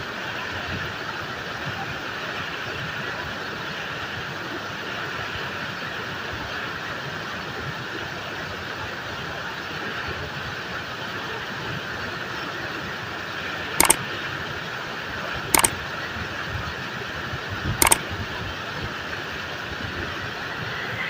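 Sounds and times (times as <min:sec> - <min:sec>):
sharp double clicks: 0:15.6 - 0:15.8.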